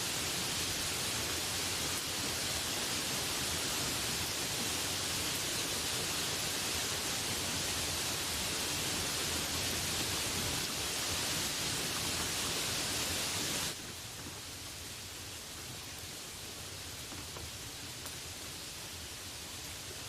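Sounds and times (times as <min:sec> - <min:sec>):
heavy rain hissing: 0:00.0 - 0:20.0.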